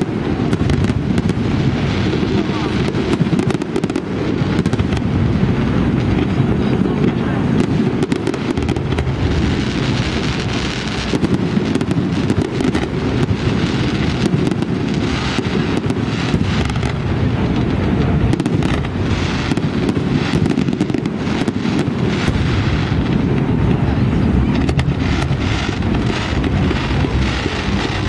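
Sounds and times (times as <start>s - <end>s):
fireworks bangs and crackles: 0.0s - 28.0s
low rumble: 22.0s - 28.0s.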